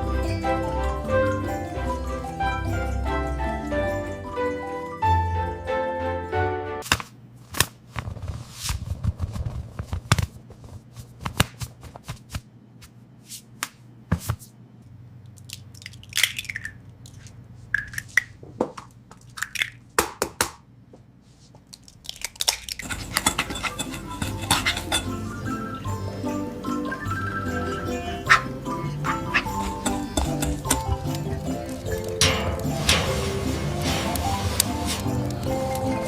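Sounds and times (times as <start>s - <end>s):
music: 0.0s - 6.8s, 22.8s - 36.0s
objects clicking and crinkling: 15.3s - 19.9s, 21.6s - 25.4s, 29.1s - 36.0s.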